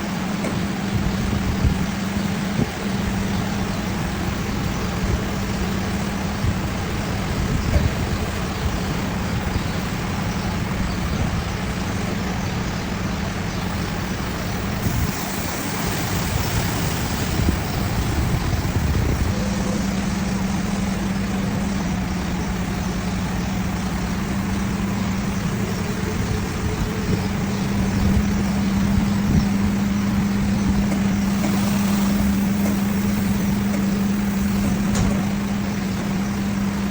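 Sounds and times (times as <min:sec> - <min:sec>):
bus wash machinery running: 0:00.0 - 0:36.9
hiss: 0:13.6 - 0:21.7, 0:27.3 - 0:36.9.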